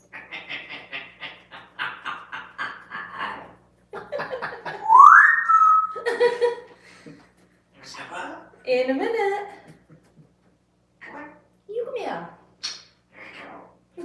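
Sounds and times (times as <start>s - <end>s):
parrot chattering: 0.0s - 3.6s, 4.8s - 6.0s, 12.6s - 13.8s
parrot whistle: 4.7s - 6.1s.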